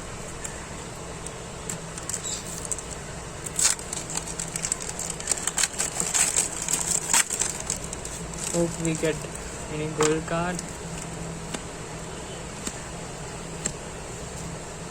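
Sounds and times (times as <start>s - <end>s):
card packet wrapper crinkling: 1.2s - 11.2s.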